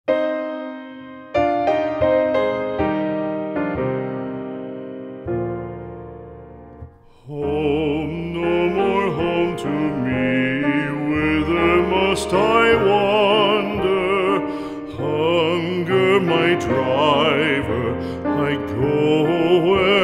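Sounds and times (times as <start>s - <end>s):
keyboard chord: 0.1s - 20.0s
sustained keyboard accompaniment: 0.1s - 20.0s
operatic singing voice: 7.1s - 20.0s.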